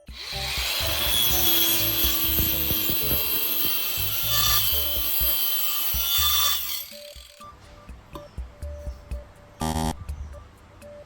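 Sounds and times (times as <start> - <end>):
angle grinder cutting wood: 0.0 - 7.5.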